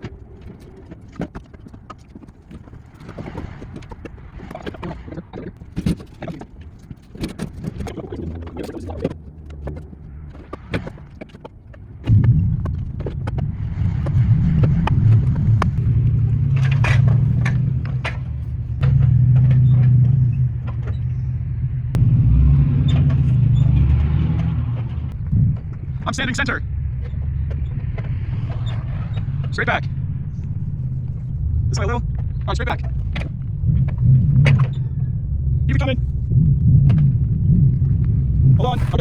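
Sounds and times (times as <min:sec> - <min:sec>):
firewood pieces clunking: 0:14.9 - 0:20.9.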